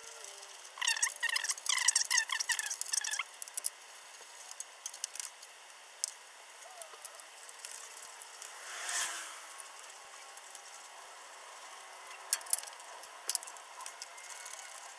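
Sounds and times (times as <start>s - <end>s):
brief rush of hiss: 8.5s - 9.8s.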